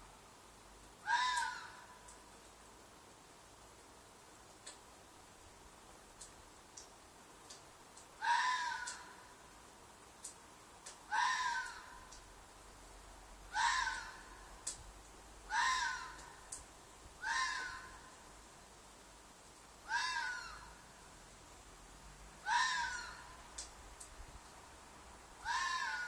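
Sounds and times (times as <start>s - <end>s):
fox screaming: 1.1s - 1.8s, 8.2s - 9.0s, 11.1s - 12.0s, 13.5s - 14.2s, 15.5s - 16.2s, 17.2s - 18.0s, 19.9s - 20.7s, 22.4s - 23.3s, 25.4s - 26.0s.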